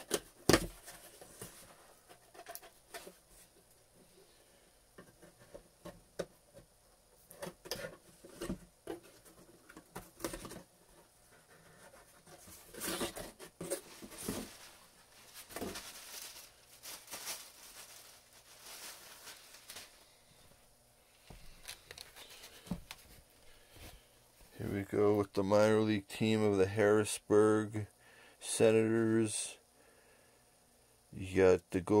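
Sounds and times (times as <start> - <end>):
packaging rustling and crinkling: 11.3 - 20.2, 21.4 - 23.2.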